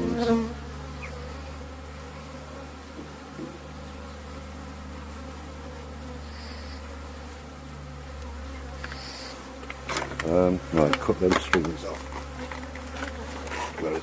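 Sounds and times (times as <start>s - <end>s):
honeybees buzzing: 0.0s - 14.0s.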